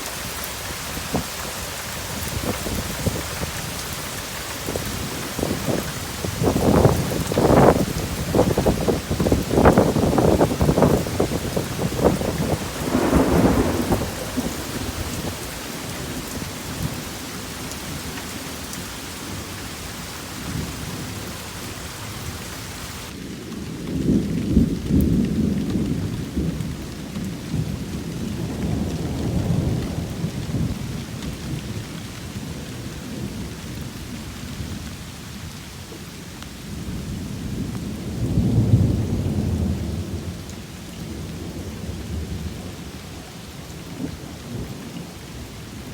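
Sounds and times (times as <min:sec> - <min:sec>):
rain falling: 0:00.0 - 0:45.9
thunder rolling: 0:04.7 - 0:17.6.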